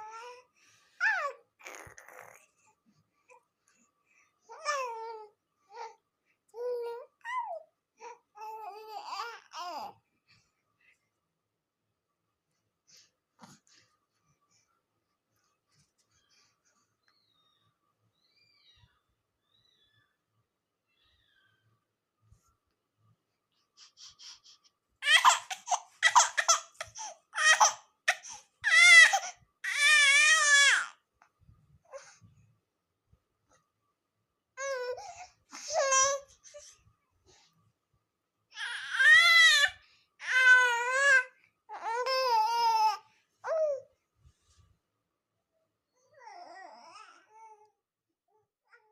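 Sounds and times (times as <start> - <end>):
baby crying and babbling: 1.0 - 2.5, 4.5 - 6.0, 6.6 - 10.0, 25.0 - 31.0, 35.7 - 36.3, 38.6 - 43.9, 46.0 - 47.7.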